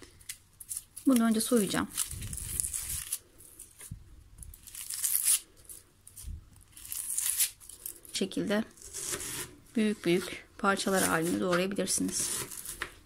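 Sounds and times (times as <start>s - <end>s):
onion skin crackling and tearing: 0.0s - 8.2s.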